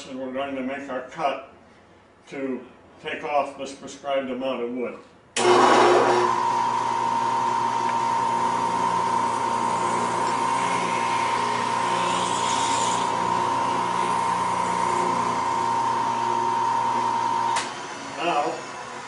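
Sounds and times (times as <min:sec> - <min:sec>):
cutter high whine: 0:05.4 - 0:19.0
drill press motor humming: 0:05.4 - 0:19.0.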